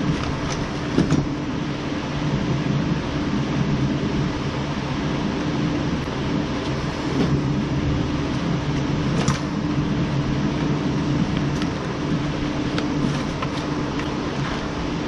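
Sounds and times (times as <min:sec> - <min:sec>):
steady mechanical hum: 0:00.0 - 0:15.0.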